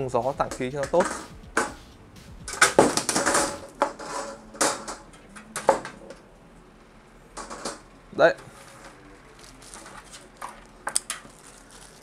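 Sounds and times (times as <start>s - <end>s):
metal computer case clattering: 0.5s - 1.8s, 2.5s - 6.1s.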